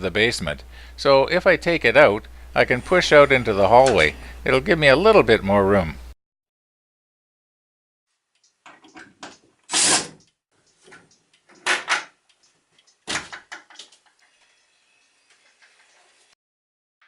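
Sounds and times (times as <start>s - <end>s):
small clicks and rattles: 10.2s - 14.5s.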